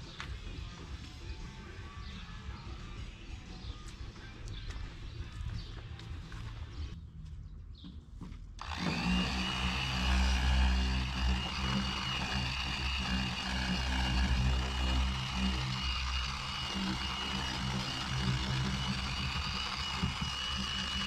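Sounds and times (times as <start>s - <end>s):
electric polisher whining: 8.6s - 21.0s.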